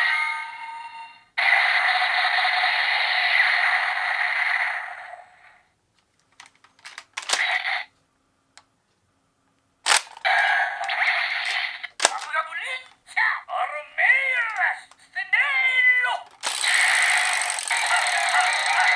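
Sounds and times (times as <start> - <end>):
plastic toy clicks: 6.2 - 7.7, 9.9 - 13.0, 16.2 - 18.9
toy electronic blast effect: 16.4 - 18.9.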